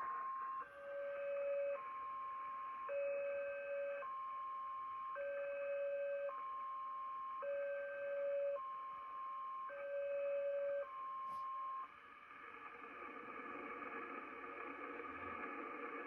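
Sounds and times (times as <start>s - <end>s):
alternating two-tone radio signal: 12.3s - 16.0s.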